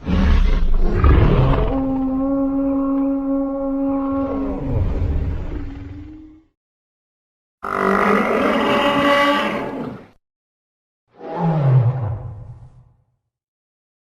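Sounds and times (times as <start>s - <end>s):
dinosaur call: 1.0s - 4.8s, 7.6s - 10.0s.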